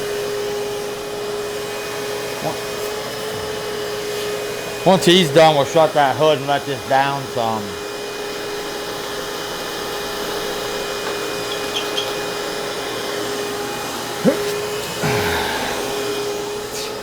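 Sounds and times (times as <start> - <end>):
short rising squeak: 11.5 - 12.2.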